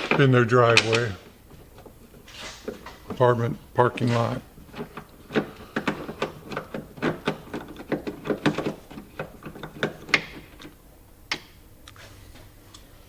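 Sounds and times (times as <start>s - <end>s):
plastic fasteners clicking: 0.0s - 11.6s.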